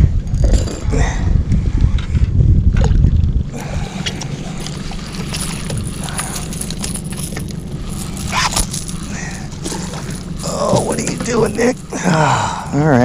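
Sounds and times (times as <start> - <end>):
wind buffeting microphone: 0.0 - 11.9
steady low rumble: 0.0 - 13.0.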